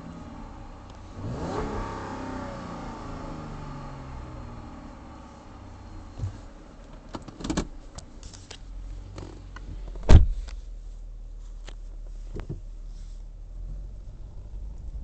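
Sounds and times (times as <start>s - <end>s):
car engine idling: 0.0s - 15.0s
clicks and knocks inside car: 6.2s - 8.4s, 12.1s - 12.7s
loud thump: 10.0s - 10.5s.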